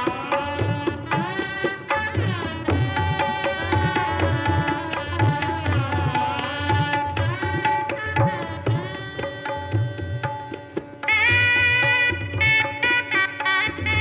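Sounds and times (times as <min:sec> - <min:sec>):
hand drum beating: 0:00.0 - 0:13.0
shehnai melody: 0:00.0 - 0:14.0.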